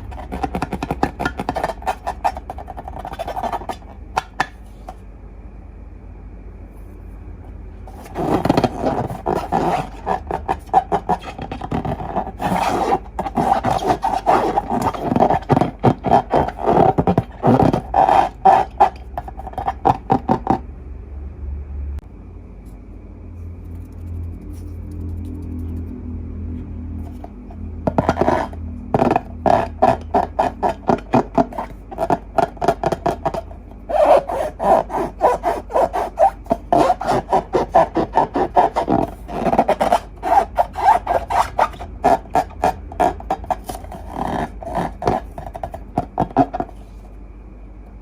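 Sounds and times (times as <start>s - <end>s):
hands squeezing rubbery material: 7.9s - 20.6s, 27.9s - 46.8s.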